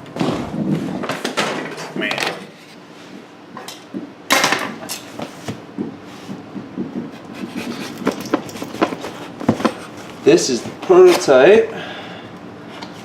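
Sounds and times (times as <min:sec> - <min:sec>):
knocks and clicks: 0:05.8 - 0:09.8.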